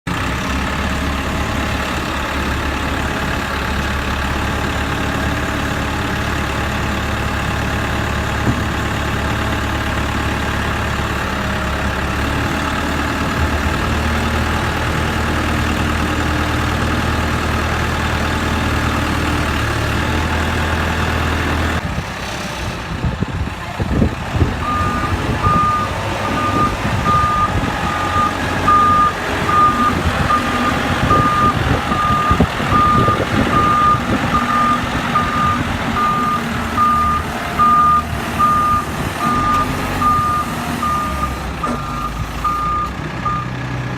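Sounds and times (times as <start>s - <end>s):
diesel truck engine running: 0.1s - 43.9s
reversing alarm beeping: 24.6s - 43.5s.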